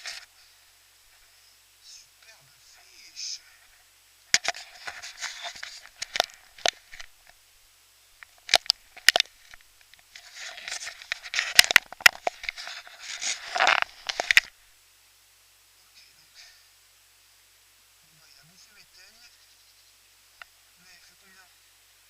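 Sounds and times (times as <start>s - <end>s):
muffled rustling handling noise: 0.0s - 1.5s, 2.2s - 7.5s, 8.2s - 14.7s
sharp clicks: 8.2s - 10.2s.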